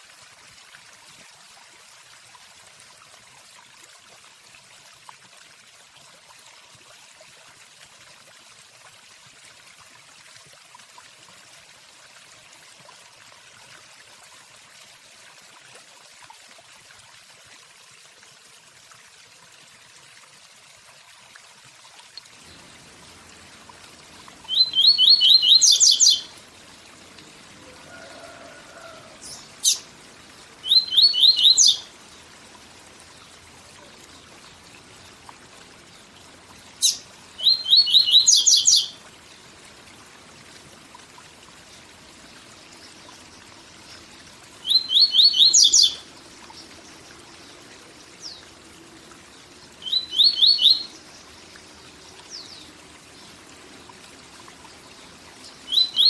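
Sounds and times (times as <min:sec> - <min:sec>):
waterfall rushing: 0:22.6 - 0:31.9
bird singing: 0:24.5 - 0:26.3, 0:30.6 - 0:31.9, 0:36.8 - 0:38.9, 0:44.6 - 0:46.0, 0:49.8 - 0:51.0, 0:55.7 - 0:56.0.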